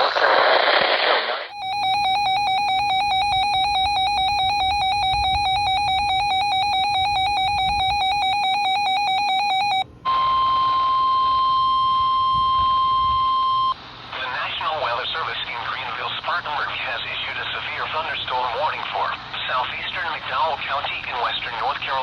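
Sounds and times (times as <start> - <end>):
steady warning alarm tone: 1.5 - 13.8
warbling electronic alarm tone: 1.5 - 13.8.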